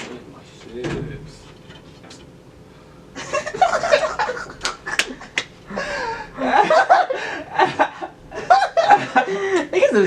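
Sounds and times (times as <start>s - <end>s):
people laughing and snickering: 3.2s - 10.0s.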